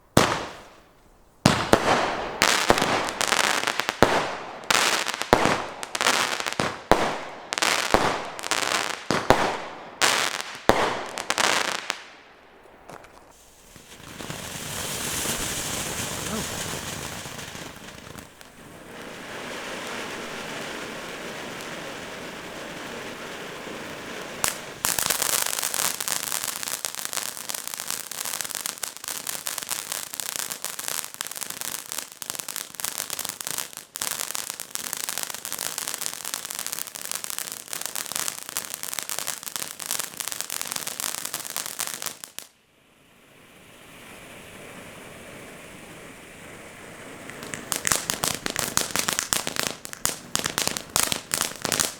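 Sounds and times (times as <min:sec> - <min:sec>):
firework dense crackling: 0:00.0 - 0:42.6, 0:45.4 - 0:51.9
firework fountain hissing: 0:12.9 - 0:42.5, 0:45.9 - 0:51.9.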